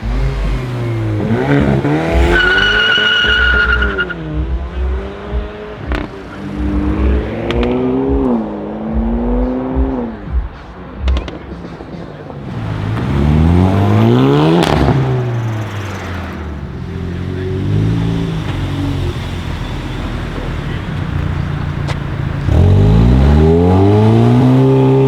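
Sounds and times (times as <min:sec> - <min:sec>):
tyre squealing: 0:00.0 - 0:08.4, 0:11.2 - 0:25.0
car engine revving: 0:00.0 - 0:25.0
exhaust cracks: 0:00.0 - 0:25.0.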